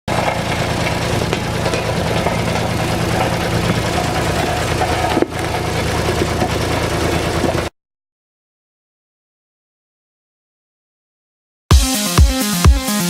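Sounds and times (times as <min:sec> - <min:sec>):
road roller engine idling: 0:00.0 - 0:07.7.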